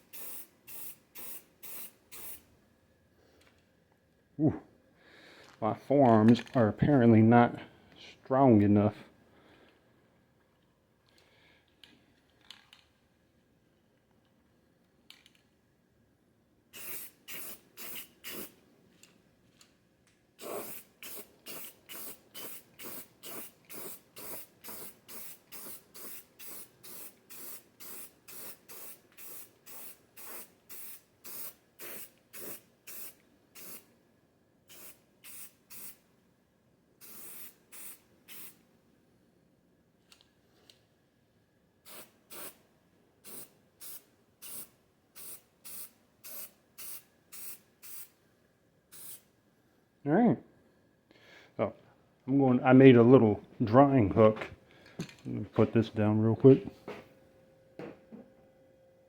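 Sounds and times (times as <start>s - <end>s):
spray paint can hissing: 0.0s - 2.4s, 16.8s - 18.6s, 20.4s - 33.9s, 34.7s - 36.0s, 37.0s - 38.6s, 41.9s - 42.6s, 43.2s - 48.1s, 48.9s - 49.2s.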